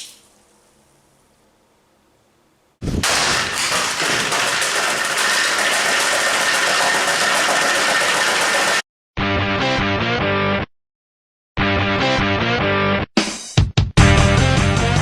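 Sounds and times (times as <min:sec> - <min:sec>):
electric fan running: 0:00.0 - 0:08.8.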